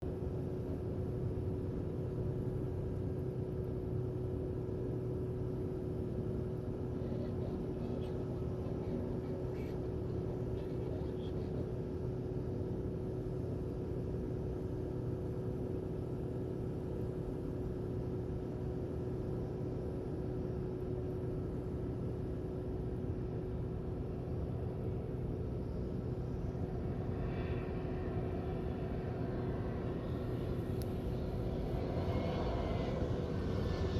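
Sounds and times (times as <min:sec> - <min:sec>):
jet engines idling: 0:05.4 - 0:14.1, 0:15.9 - 0:33.9.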